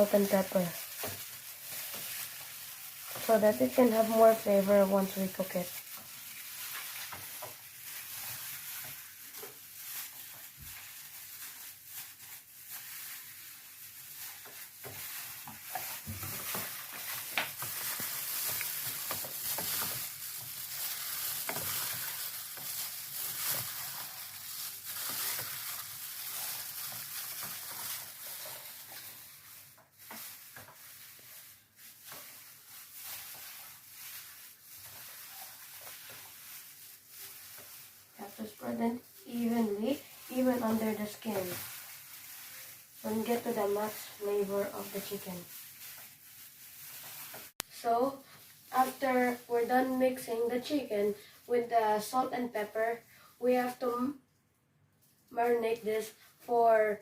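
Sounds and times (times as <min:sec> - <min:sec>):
hands rubbing wet raw meat: 0:00.0 - 0:47.6.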